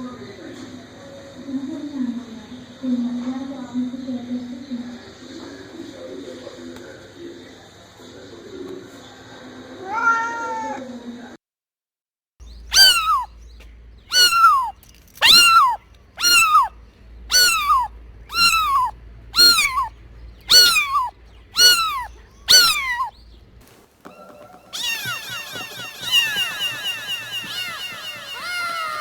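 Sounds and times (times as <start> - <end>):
chorus of high falling calls: 12.5 - 13.4, 14.0 - 23.3, 24.0 - 29.0
cat meowing: 12.7 - 13.4, 14.1 - 23.2, 24.1 - 29.0.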